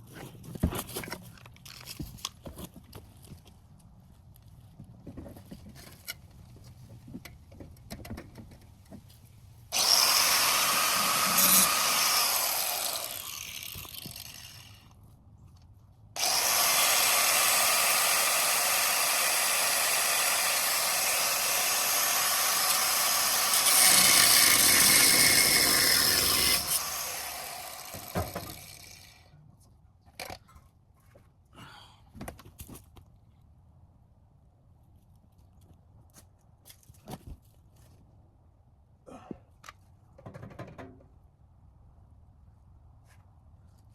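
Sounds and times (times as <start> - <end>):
angle grinder cutting metal: 9.7 - 14.8, 16.2 - 29.2.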